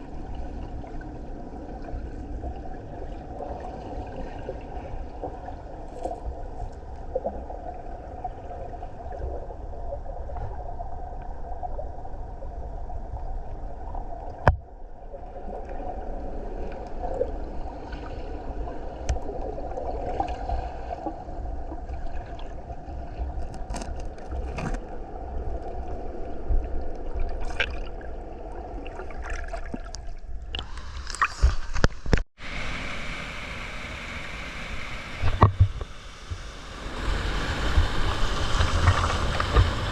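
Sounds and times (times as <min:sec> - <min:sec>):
rushing gurgling water: 0:00.0 - 0:39.9
wind on microphone: 0:33.6 - 0:39.9.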